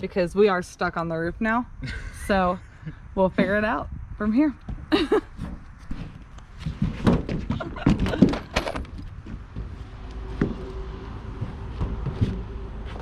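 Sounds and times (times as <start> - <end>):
knocks and thunks on metal roof: 5.4 - 9.8.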